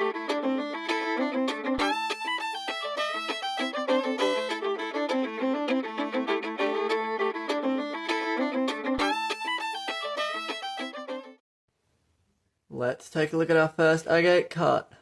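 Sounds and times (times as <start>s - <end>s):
fiddle tune: 0.0s - 11.4s.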